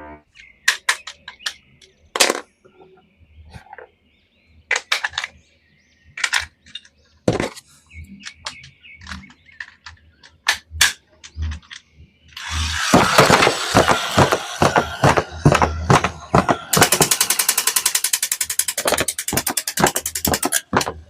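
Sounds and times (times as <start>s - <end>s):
plastic toys clicking: 0.4s - 2.5s, 6.1s - 7.0s, 8.2s - 21.0s
knocks: 13.0s - 17.1s.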